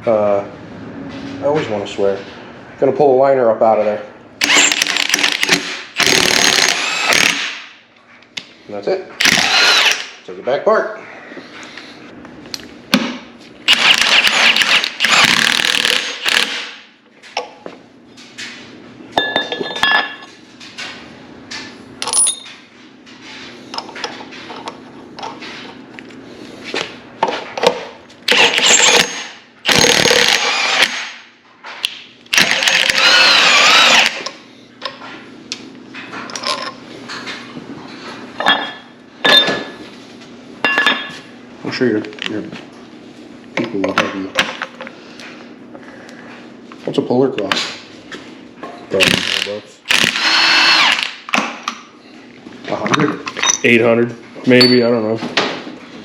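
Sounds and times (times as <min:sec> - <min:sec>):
power wrench running: 0:04.4 - 0:07.7, 0:09.2 - 0:10.2, 0:13.7 - 0:16.8, 0:28.3 - 0:31.2, 0:32.3 - 0:34.4, 0:49.0 - 0:51.3.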